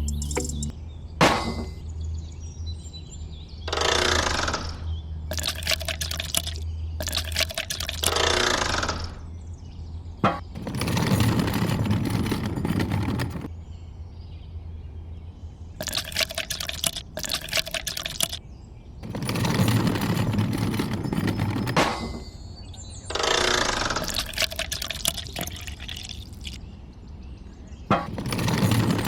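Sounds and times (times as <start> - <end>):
water gushing: 5.3 - 8.1, 15.8 - 18.4, 24.0 - 26.6.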